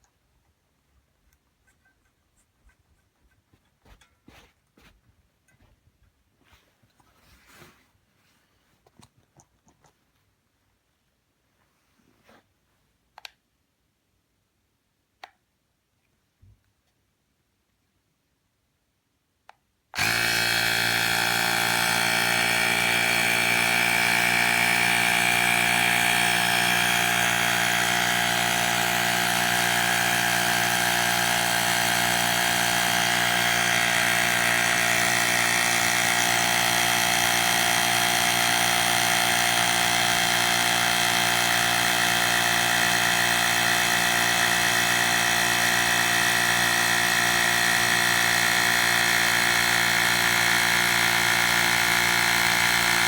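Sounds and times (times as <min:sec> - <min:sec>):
electric air pump humming: 0:20.0 - 0:53.0.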